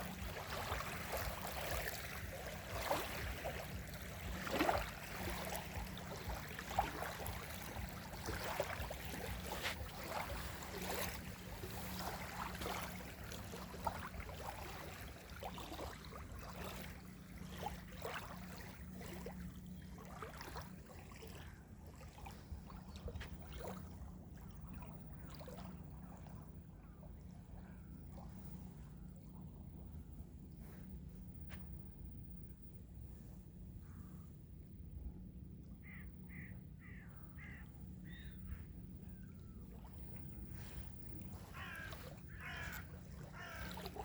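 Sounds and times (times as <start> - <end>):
small waves lapping at shoreline: 0.0 - 34.7, 35.6 - 44.0
steady low rumble: 21.7 - 43.6.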